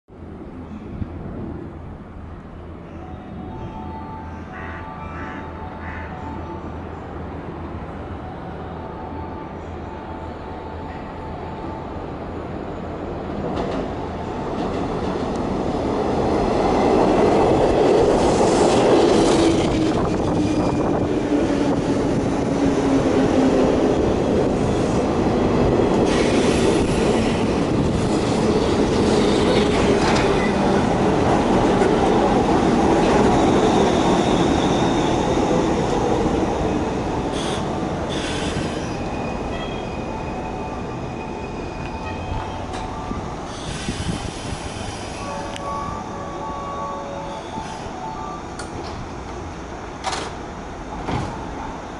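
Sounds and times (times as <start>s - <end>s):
train wheels squealing: 33.1s - 36.0s, 36.6s - 48.4s.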